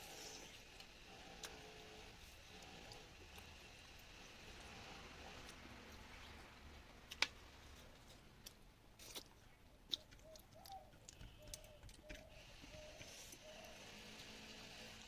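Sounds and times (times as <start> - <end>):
clicks and taps of eating: 8.4 - 13.1
faint chirping: 10.2 - 14.1.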